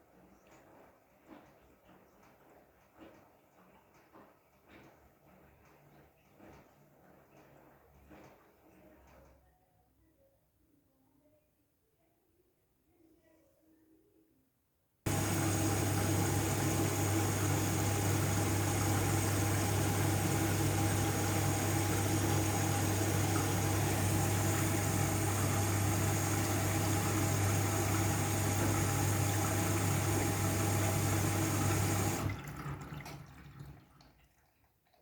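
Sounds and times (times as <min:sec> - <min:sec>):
water rushing into washing machine: 0:15.1 - 0:35.0.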